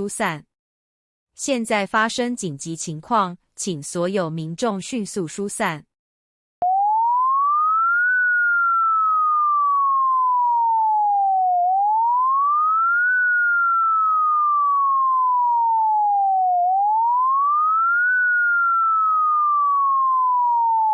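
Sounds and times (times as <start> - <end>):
rising and falling alarm tone: 6.6 - 20.9.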